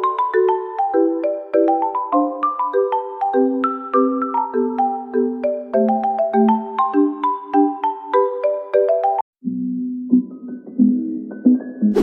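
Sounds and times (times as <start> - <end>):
bell-like mallet melody: 0.0 - 9.3.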